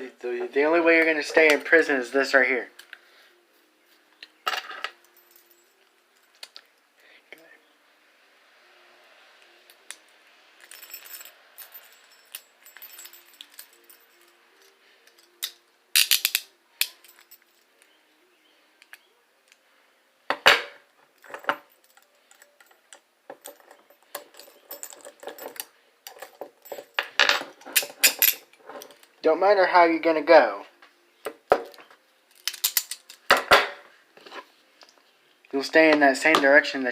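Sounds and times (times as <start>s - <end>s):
metal handcuffs rattling: 10.6s - 17.7s, 21.2s - 29.2s, 31.5s - 33.4s.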